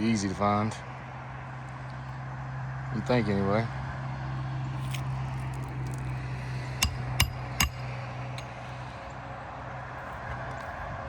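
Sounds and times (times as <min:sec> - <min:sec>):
steady low hum: 0:05.9 - 0:08.9
hammer strikes: 0:06.8 - 0:07.8.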